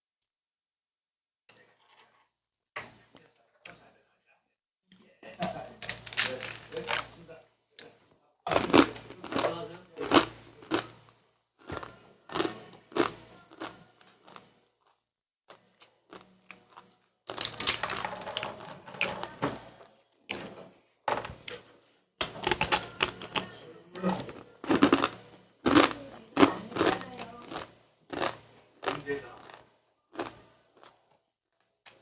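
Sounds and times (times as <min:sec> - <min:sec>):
crunching while eating snacks: 0:05.6 - 0:07.1, 0:08.5 - 0:21.6, 0:22.2 - 0:31.2.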